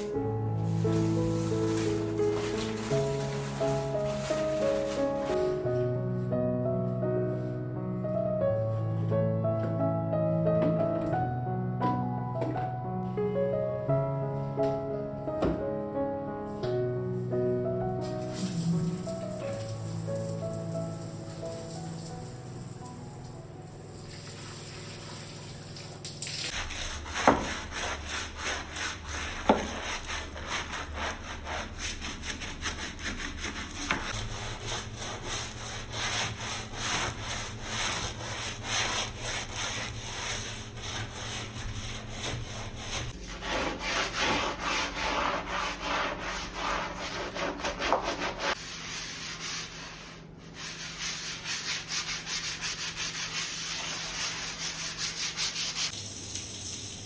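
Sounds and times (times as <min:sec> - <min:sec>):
rhythmic scraping strokes: 0:00.0 - 0:05.4, 0:40.2 - 0:55.9.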